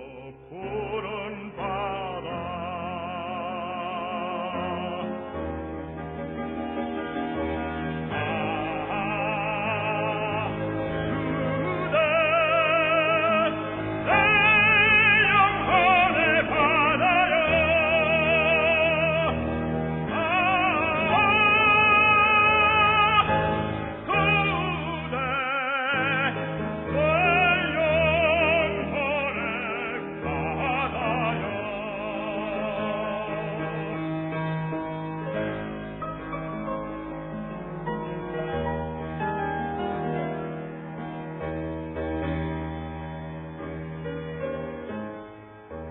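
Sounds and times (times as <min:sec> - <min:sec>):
operatic tenor singing: 0:00.0 - 0:05.8, 0:07.4 - 0:35.7
instrumental accompaniment: 0:00.1 - 0:45.9.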